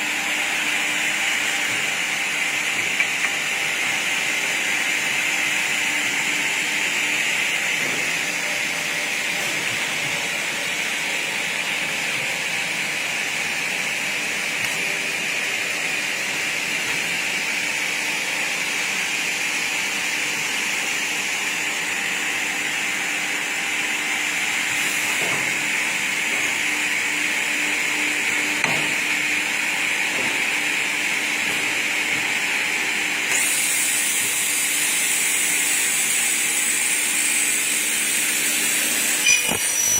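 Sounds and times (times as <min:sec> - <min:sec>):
metal cutting saw whirring: 0:38.3 - 0:39.9.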